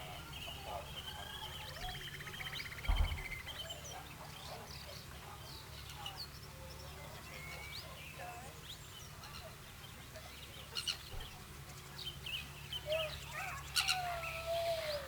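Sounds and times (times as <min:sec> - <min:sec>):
birds chirping and trilling: 0:00.0 - 0:05.0, 0:10.7 - 0:15.0
dull thump: 0:02.9 - 0:03.5.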